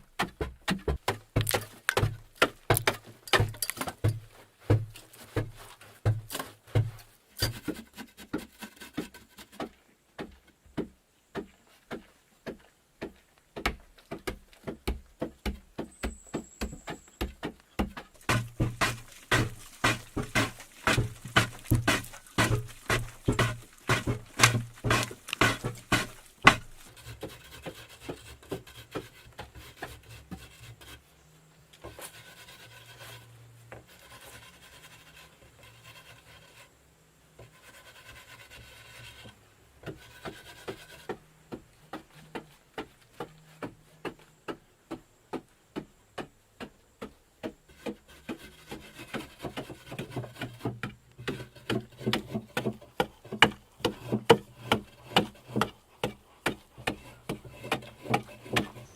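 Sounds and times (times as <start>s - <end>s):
knocking strokes on wood: 0.0s - 30.9s, 39.0s - 58.9s
wood being scraped and rubbed: 1.4s - 9.8s, 16.4s - 31.2s, 31.8s - 36.8s, 37.4s - 44.2s, 47.7s - 58.9s.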